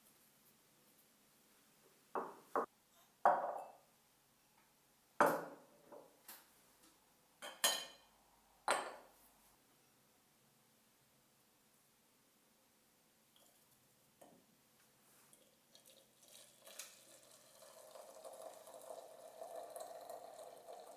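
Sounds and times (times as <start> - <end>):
dishes clinking and knocking: 2.2 - 2.7, 3.3 - 3.8, 5.2 - 6.1, 7.4 - 8.1, 8.7 - 9.1.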